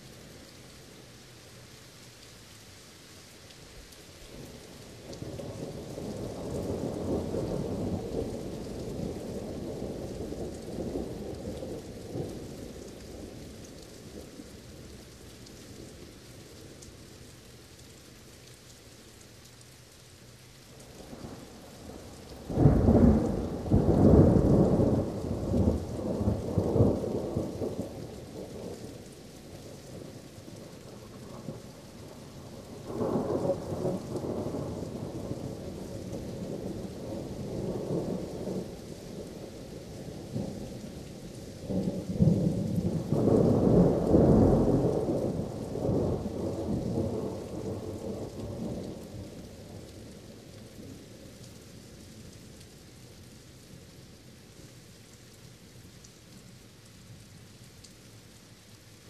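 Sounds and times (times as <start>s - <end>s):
steady rain: 0.0s - 59.0s
thunder rumbling: 22.5s - 28.7s.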